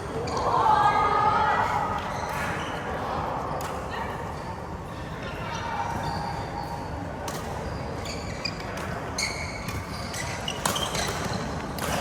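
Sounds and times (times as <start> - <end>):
shoes squeaking on court floor: 5.9 - 12.0.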